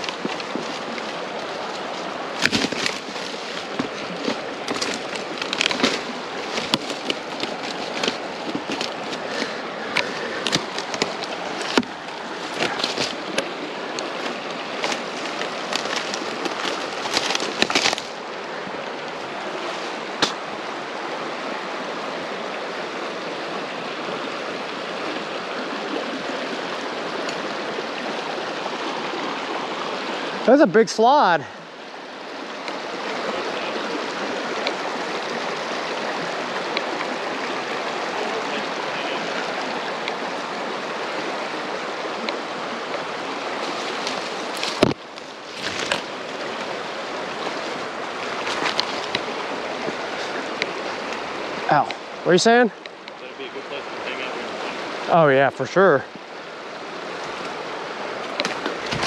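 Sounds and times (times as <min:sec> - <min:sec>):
creek water rushing: 0:00.0 - 0:59.0
sharp cracks and knocks: 0:02.4 - 0:13.5, 0:14.2 - 0:18.2, 0:43.7 - 0:46.2, 0:58.2 - 0:59.0.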